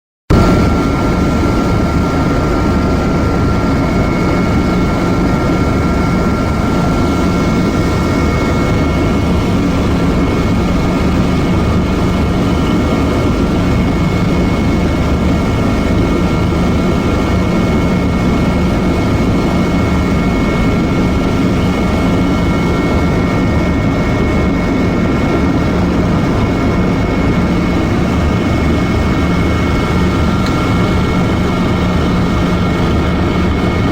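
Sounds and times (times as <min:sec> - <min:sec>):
helicopter rotor and engine rumble: 0:00.3 - 0:33.9.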